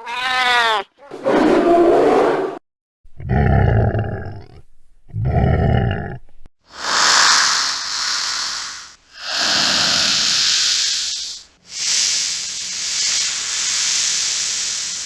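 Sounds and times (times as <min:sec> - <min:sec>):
deep monster roars: 0:03.2 - 0:06.2
monster rough roar: 0:03.2 - 0:06.2, 0:09.2 - 0:10.4.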